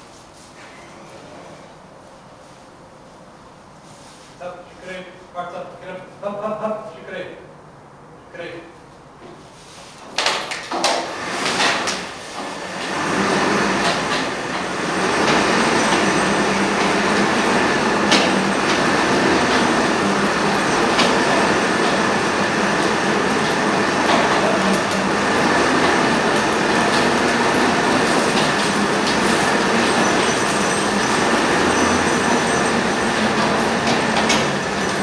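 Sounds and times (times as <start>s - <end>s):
mill gearing rattling: 10.2s - 35.0s.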